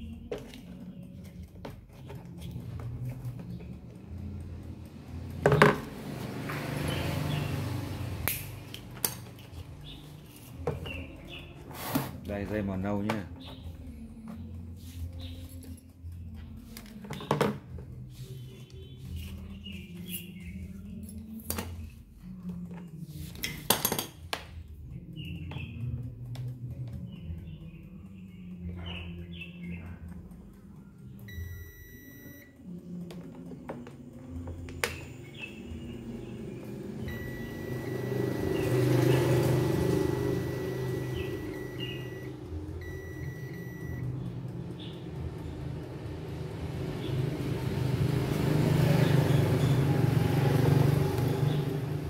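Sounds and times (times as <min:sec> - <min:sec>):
steady low hum: 0:30.1 - 0:47.0.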